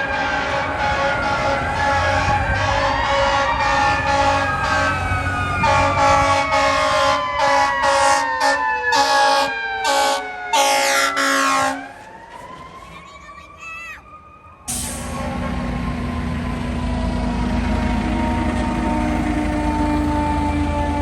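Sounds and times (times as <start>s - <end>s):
fire truck siren wailing: 0.0s - 21.0s
truck air horn blasts: 0.1s - 11.9s, 17.4s - 21.0s.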